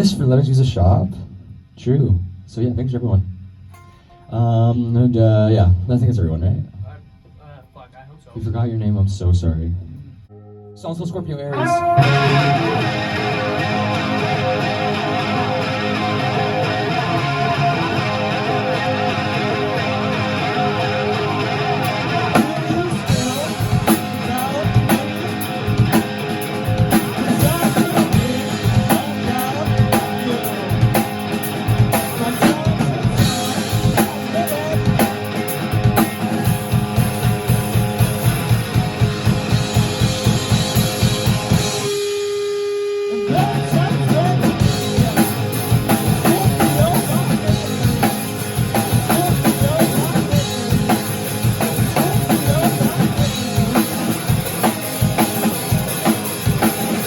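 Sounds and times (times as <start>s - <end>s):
rock band playing: 11.6s - 57.0s.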